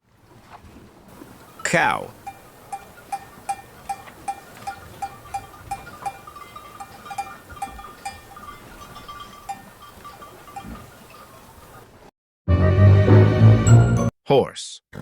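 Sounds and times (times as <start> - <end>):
cowbell clanking: 1.4 - 11.8.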